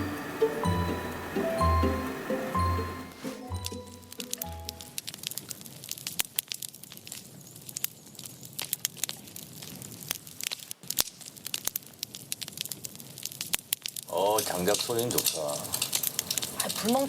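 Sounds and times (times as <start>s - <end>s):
firewood crackling and popping: 3.4s - 17.0s.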